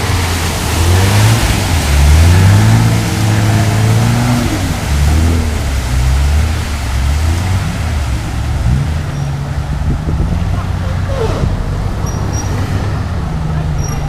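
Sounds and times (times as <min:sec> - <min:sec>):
car engine revving: 0:00.0 - 0:14.0
wind noise: 0:07.8 - 0:14.0.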